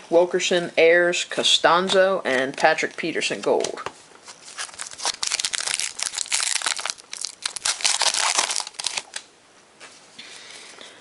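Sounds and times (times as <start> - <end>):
wrapper crinkling and tearing: 3.6 - 9.3.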